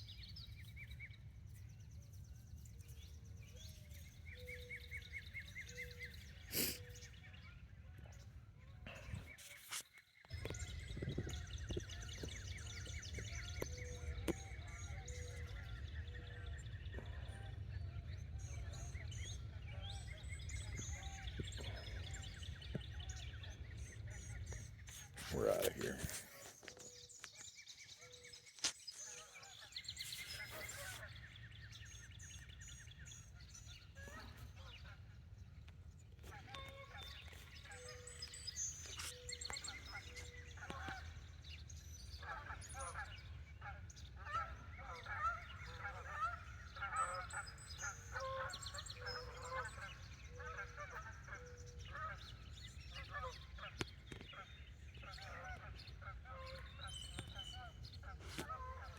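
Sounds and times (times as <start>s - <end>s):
geese honking: 42.2s - 54.3s, 55.0s - 58.9s.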